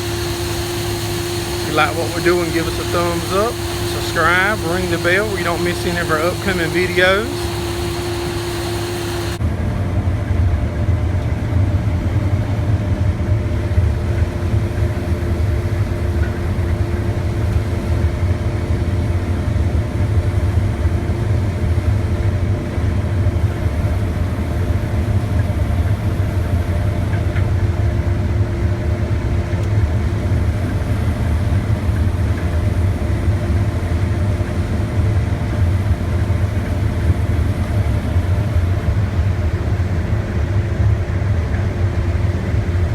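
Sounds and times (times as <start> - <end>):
combine harvester engine droning: 0.0 - 9.4.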